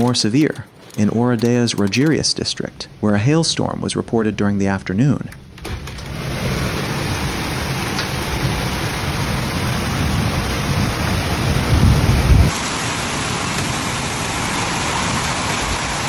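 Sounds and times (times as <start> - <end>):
heavy rain downpour: 5.6 - 16.0.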